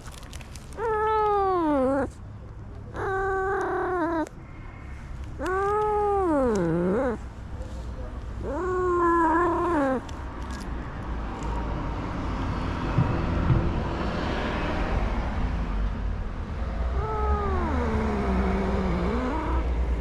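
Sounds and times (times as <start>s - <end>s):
traffic rumble: 0.0s - 20.0s
cat meowing: 0.8s - 2.2s, 3.0s - 4.3s, 5.4s - 7.2s, 8.4s - 10.1s, 17.0s - 19.7s.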